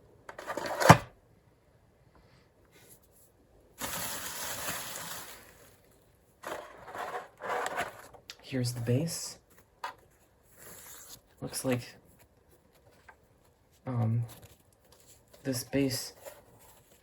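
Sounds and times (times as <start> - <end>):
packaging rustling: 3.8 - 8.2, 12.1 - 17.0.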